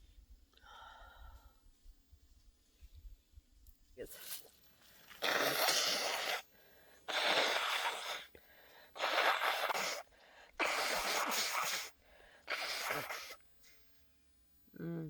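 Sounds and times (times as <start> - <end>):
person breathing forcefully: 5.2 - 13.4.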